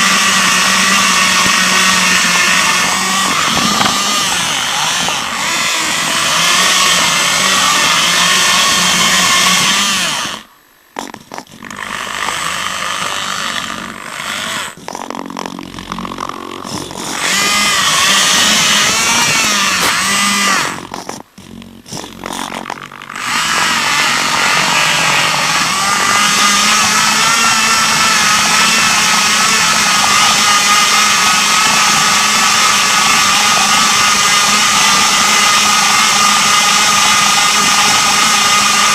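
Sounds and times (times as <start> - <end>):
rover motors whining: 0.0 - 38.9.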